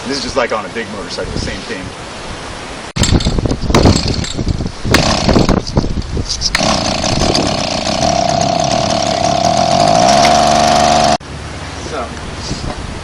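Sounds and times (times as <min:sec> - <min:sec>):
small engine sputtering and running: 0:03.9 - 0:05.5, 0:06.5 - 0:11.2.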